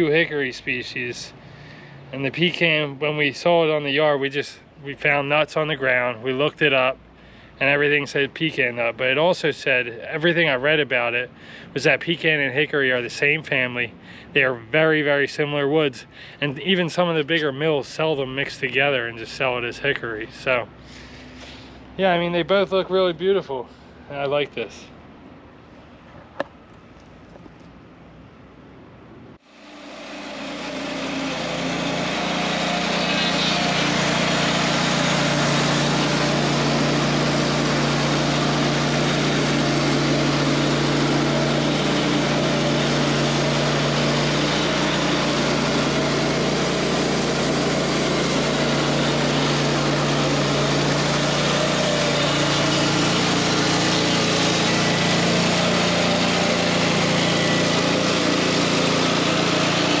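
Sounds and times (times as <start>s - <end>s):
band sawmill engine humming: 29.4s - 60.0s.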